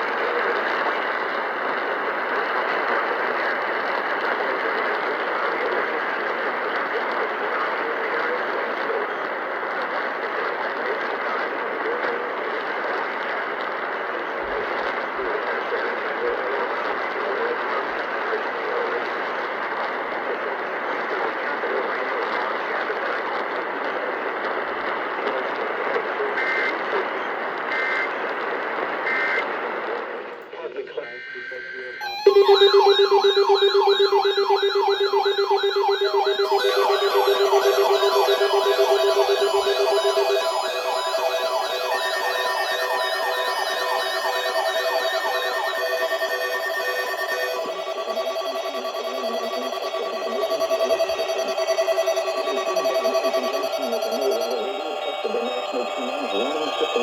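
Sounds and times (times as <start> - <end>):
radio static hiss: 0.0 - 17.7
crackly radio static: 0.0 - 57.0
warbling two-tone data bursts: 32.0 - 57.0.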